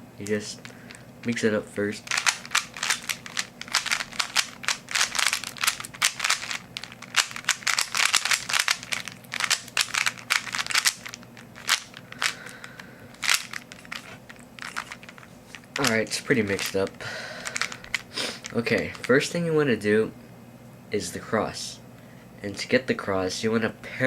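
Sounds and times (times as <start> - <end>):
puzzle cube clicking: 2.0 - 16.8.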